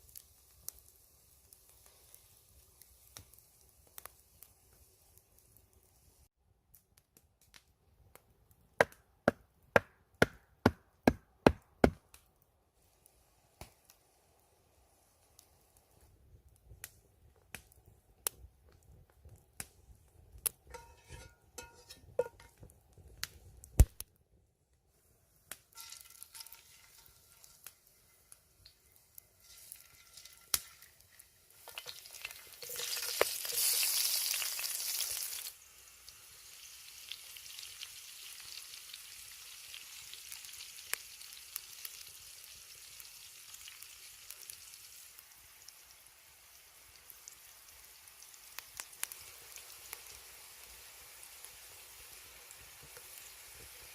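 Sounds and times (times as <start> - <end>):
food sizzling in hot oil: 0.0 - 6.3, 20.7 - 22.6, 25.6 - 53.9.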